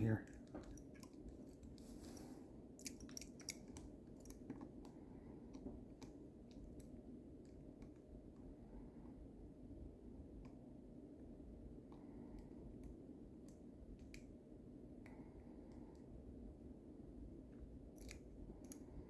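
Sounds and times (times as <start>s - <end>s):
lock picks clicking in lock: 0.2s - 1.8s, 2.8s - 4.7s, 17.9s - 18.9s.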